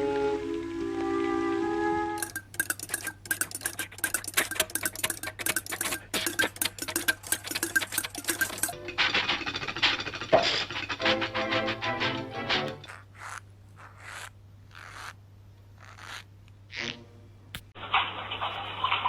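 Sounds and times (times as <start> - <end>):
prop clattering clicks and knocks: 2.2 - 12.9.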